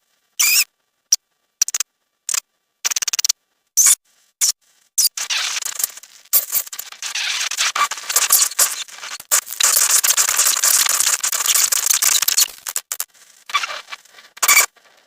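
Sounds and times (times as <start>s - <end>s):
dolphin clicking and crackling buzz: 5.0s - 15.0s.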